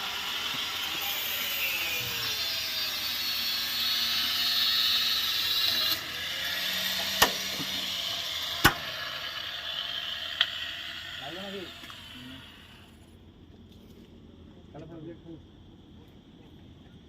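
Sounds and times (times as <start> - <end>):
hissing tool noise: 0.0 - 13.2.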